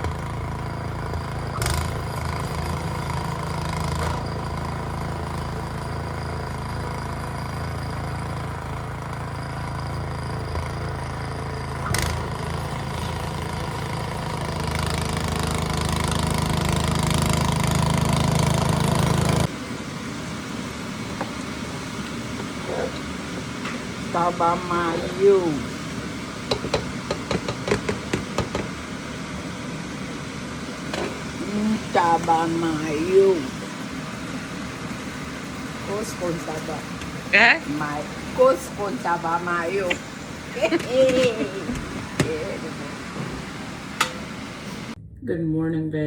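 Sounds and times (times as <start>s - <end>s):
engine hum: 0.0s - 19.6s.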